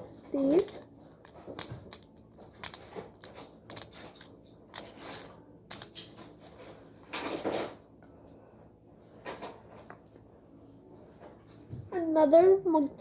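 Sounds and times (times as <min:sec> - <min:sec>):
plastic toys clicking and clacking: 0:00.3 - 0:06.6.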